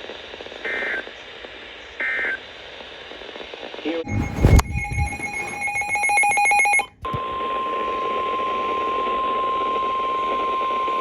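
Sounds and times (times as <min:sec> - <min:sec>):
buzzing digital data tones: 0:04.1 - 0:06.8
steady warning alarm tone: 0:04.1 - 0:06.9.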